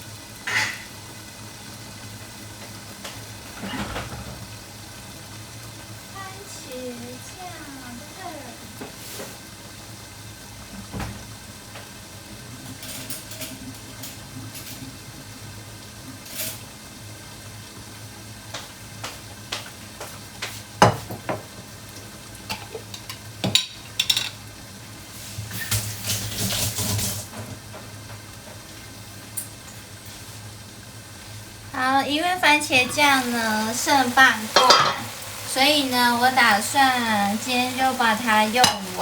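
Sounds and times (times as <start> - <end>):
dishes and utensils clattering: 0.4 - 0.9, 12.7 - 14.8, 22.5 - 24.4, 34.6 - 35.1, 38.6 - 39.0.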